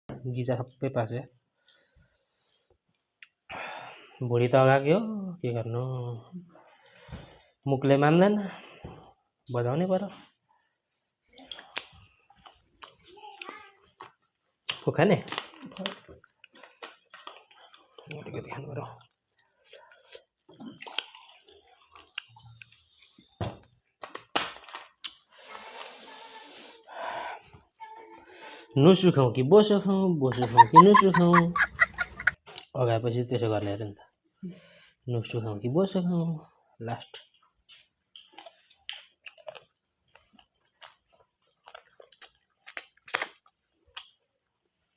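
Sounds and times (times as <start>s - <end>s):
mouth chewing with wet smacks: 11.4s - 18.4s, 19.0s - 23.4s, 37.2s - 44.4s.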